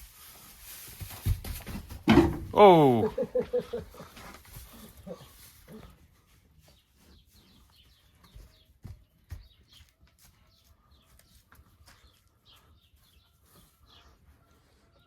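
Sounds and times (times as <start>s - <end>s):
small birds chirping: 3.2s - 15.0s.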